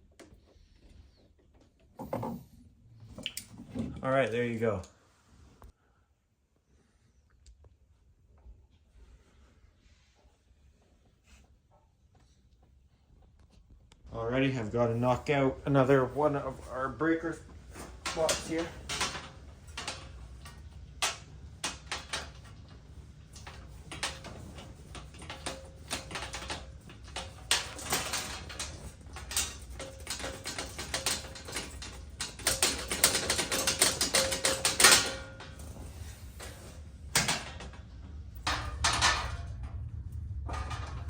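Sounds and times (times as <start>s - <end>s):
metal rattling: 14.8s - 41.0s.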